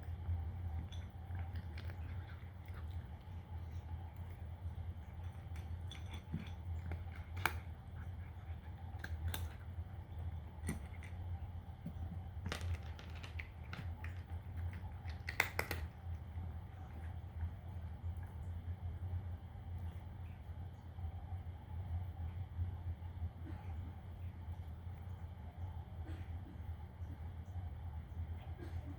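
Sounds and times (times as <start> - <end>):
cat crunching dry food: 0.0 - 18.4
steady low hum: 0.0 - 28.9.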